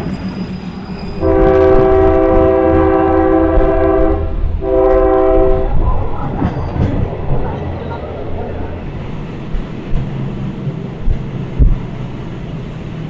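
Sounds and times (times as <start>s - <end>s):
low rumble of running train: 0.0s - 13.0s
train horn blasts: 1.2s - 5.8s.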